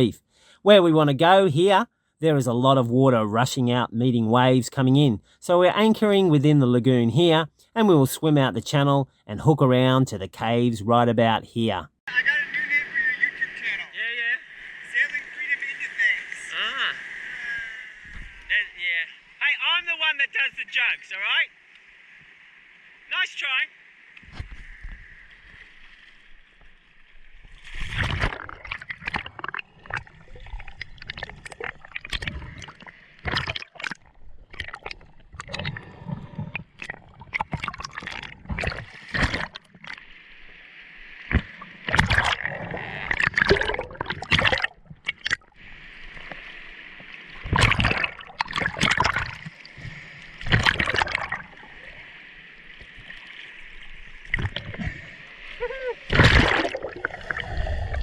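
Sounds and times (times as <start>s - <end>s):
water splashing and sloshing: 14.5s - 19.8s, 21.2s - 58.0s.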